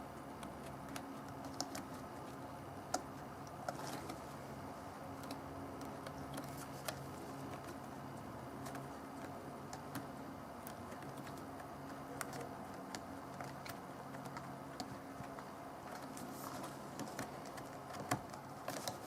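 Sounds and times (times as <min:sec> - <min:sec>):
steady low hum: 0:00.0 - 0:19.0
light clicks and taps: 0:08.6 - 0:19.0.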